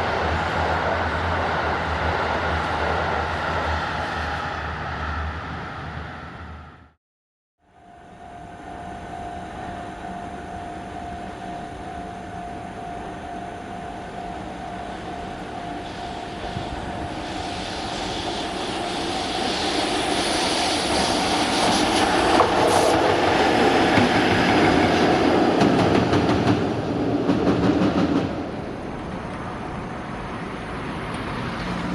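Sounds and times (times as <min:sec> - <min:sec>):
electric locomotive approaching: 0:00.0 - 0:07.0, 0:07.6 - 0:31.9
steady tone: 0:07.6 - 0:25.6.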